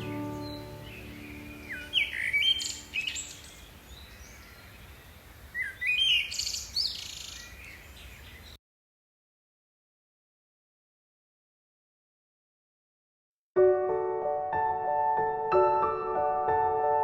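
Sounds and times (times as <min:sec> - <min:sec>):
songbird singing: 0:00.0 - 0:08.6.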